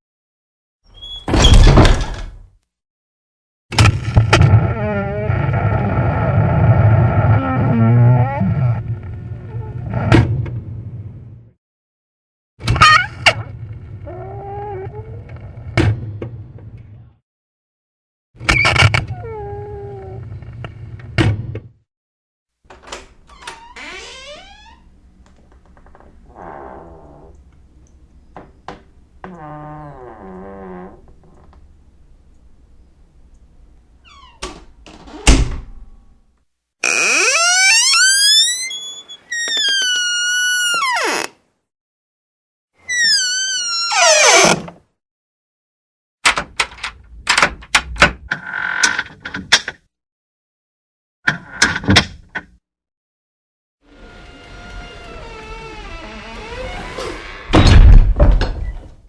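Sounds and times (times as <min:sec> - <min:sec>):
door hinges creaking: 0:00.9 - 0:02.4, 0:22.7 - 0:27.4, 0:28.7 - 0:31.6, 0:34.1 - 0:35.4, 0:36.8 - 0:41.4, 0:42.8 - 0:44.8, 0:53.9 - 0:58.9
door click and thump: 0:01.2 - 0:02.4.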